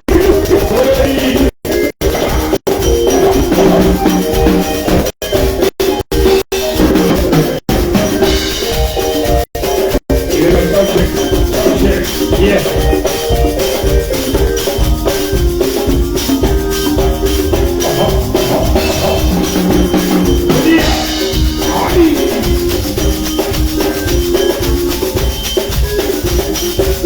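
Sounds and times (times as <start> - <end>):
drum beat: 0.0 - 27.0
live band playing: 0.0 - 27.0
shaker: 8.0 - 27.0.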